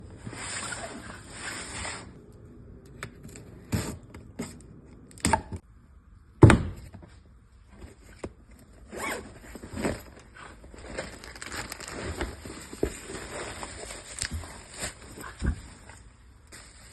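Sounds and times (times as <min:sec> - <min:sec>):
packaging rustling: 0:09.4 - 0:15.3.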